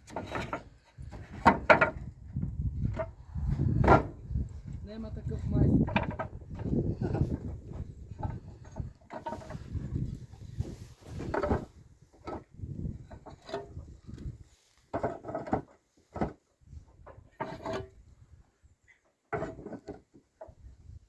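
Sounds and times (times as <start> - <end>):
building materials knocking and clattering: 0.0 - 4.2, 5.7 - 10.0, 11.2 - 13.9, 14.9 - 17.9.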